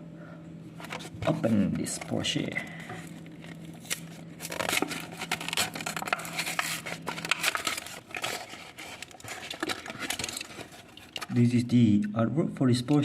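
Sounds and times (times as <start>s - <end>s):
low steady hum: 0.0s - 13.0s
plastic packaging crackling: 2.8s - 11.4s.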